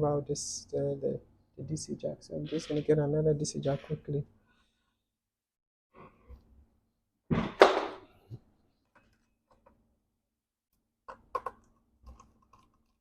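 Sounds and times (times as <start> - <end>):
thud: 7.3 - 8.0.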